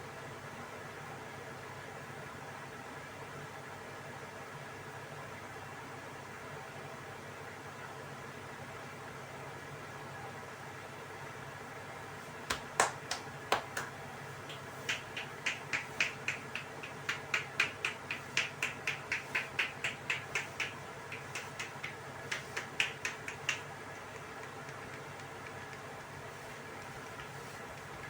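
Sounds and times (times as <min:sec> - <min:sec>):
hands tapping on head: 0:12.5 - 0:28.0.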